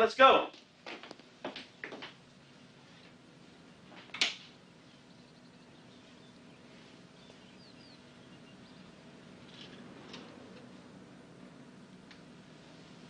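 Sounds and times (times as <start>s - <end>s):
low steady hum: 0.0s - 13.0s
faint bird chirps: 4.6s - 9.8s.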